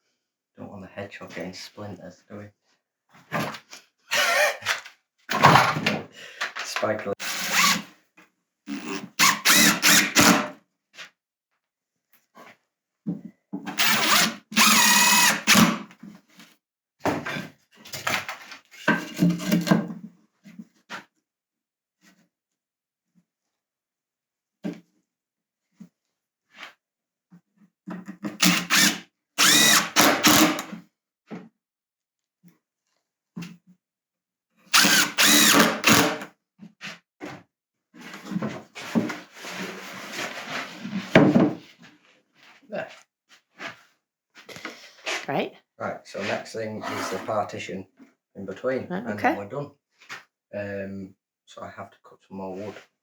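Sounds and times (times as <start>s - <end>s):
power drill driving screws: 4.1s - 4.6s, 7.2s - 7.9s, 8.7s - 10.5s, 13.8s - 15.8s, 28.4s - 30.7s, 34.7s - 36.3s.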